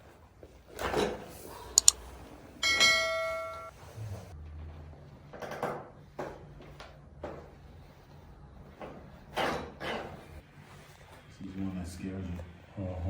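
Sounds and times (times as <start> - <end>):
bell-like ding: 2.6 - 3.7.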